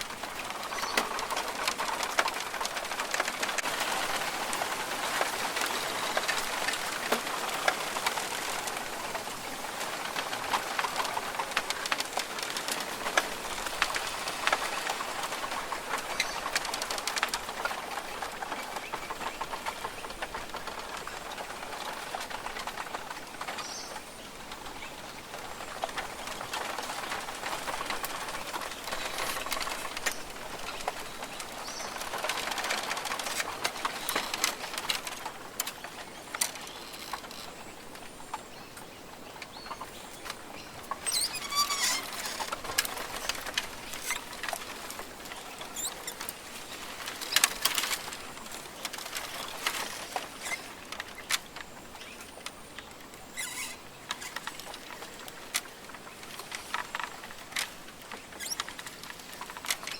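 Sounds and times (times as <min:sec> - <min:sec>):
raindrops pattering on foliage: 0:00.0 - 0:59.9
bird calls: 0:35.8 - 0:48.3, 0:52.0 - 0:55.4, 0:58.2 - 0:58.8.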